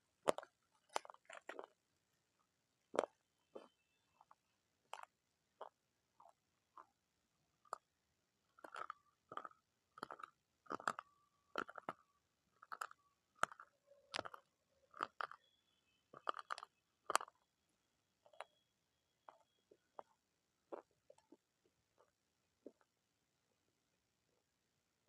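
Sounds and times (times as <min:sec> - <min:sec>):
crunchy chewing: 0:00.2 - 0:01.8, 0:02.9 - 0:06.9, 0:08.6 - 0:15.5, 0:16.1 - 0:17.4.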